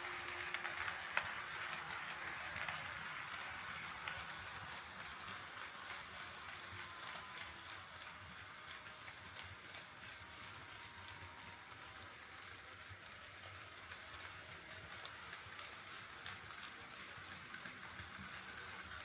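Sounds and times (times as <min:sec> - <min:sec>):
model train rolling hiss: 0:00.0 - 0:19.0
wheels clicking over rail joints: 0:00.0 - 0:19.0.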